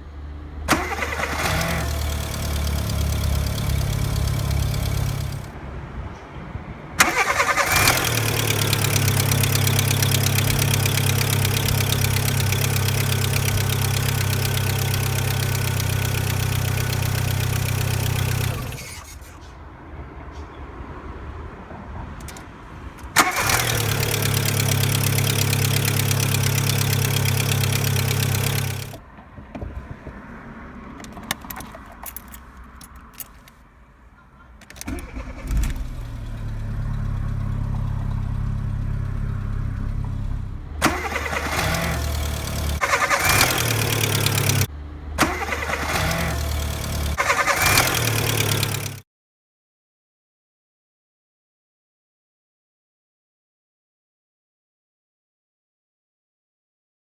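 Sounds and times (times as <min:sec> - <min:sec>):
car engine starting and idling: 0:00.4 - 0:05.6, 0:07.0 - 0:19.5, 0:22.2 - 0:30.1, 0:30.7 - 0:49.0
engine blipped: 0:34.8 - 0:49.0.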